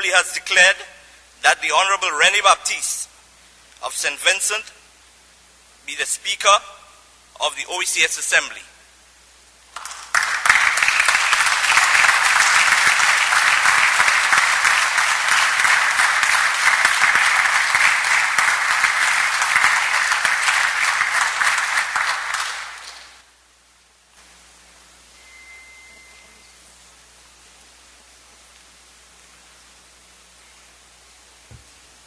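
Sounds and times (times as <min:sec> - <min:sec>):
low hiss: 0:00.0 - 0:32.0
audience applauding: 0:09.7 - 0:23.2
faint high tone: 0:25.1 - 0:26.8.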